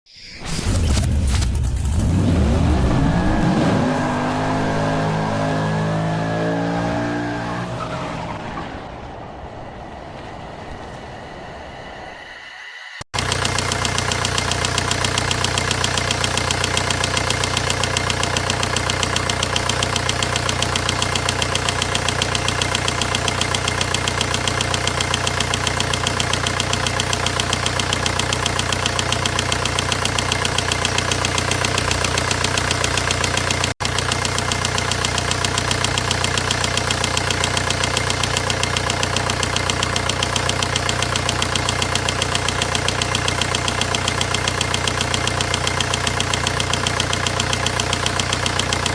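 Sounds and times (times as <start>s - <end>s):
diesel engine knocking tick: 13.2s - 48.9s.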